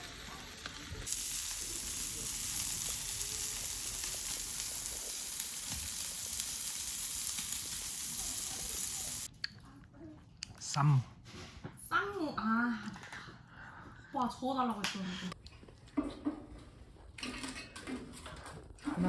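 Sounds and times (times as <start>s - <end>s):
food sizzling in a pan: 0.0s - 9.3s.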